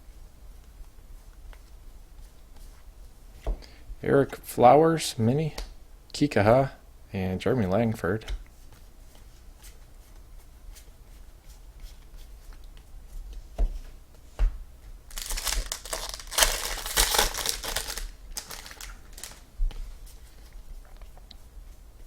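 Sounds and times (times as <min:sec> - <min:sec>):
foil wrapper crinkling and tearing: 0:15.1 - 0:19.4.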